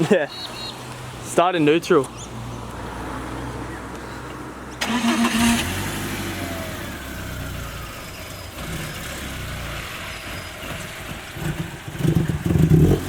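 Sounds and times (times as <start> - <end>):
car engine running: 4.8 - 13.0.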